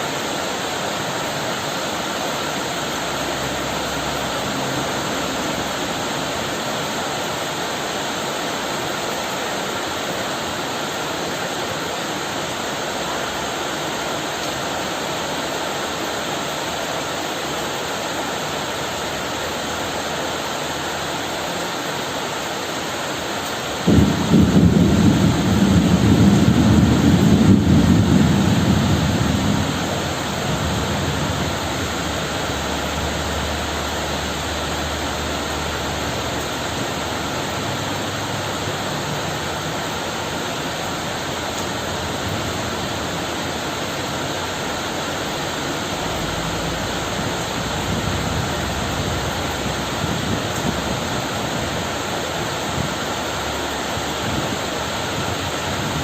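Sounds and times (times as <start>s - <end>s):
heavy rain: 0.0s - 56.0s
thunder rumble: 23.8s - 43.2s, 45.8s - 53.6s.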